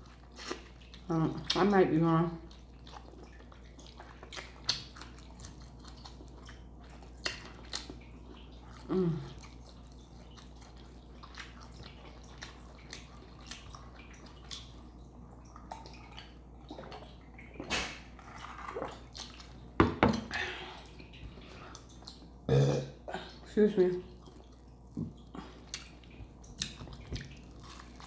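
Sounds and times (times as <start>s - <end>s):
wet chewing and mouth clicks: 0.0s - 1.7s, 2.4s - 22.4s, 24.1s - 28.0s
throaty sound: 22.5s - 23.2s.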